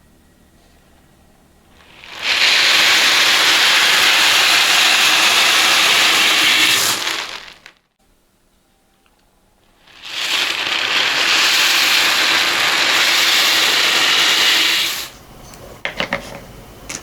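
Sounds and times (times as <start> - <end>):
beads pouring from a bottle: 1.8 - 7.7, 9.9 - 15.2.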